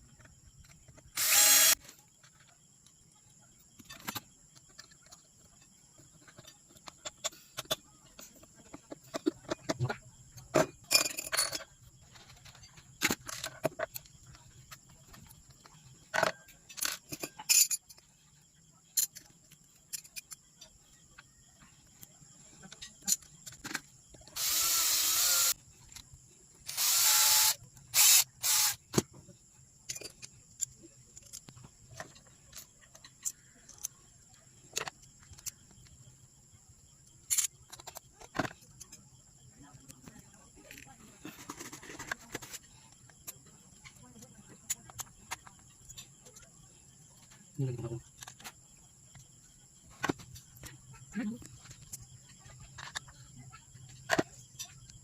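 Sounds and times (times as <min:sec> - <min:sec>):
small power tool running: 0:01.2 - 0:01.8, 0:24.4 - 0:25.6, 0:26.7 - 0:28.8.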